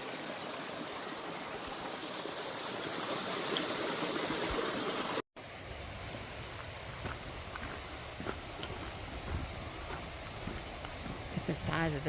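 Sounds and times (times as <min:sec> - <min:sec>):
creek water babbling over rocks: 0:00.0 - 0:05.2.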